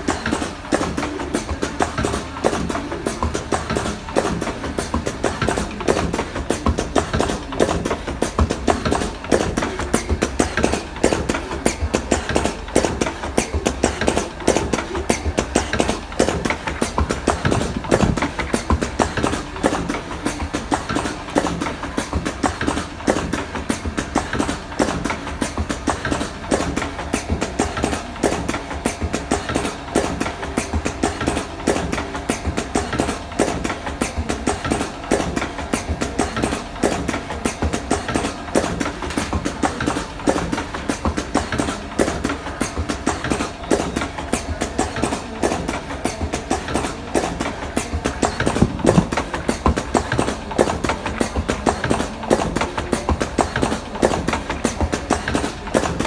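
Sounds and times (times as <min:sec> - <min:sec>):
cigarette rolling machine clatter: 0:00.0 - 0:56.0.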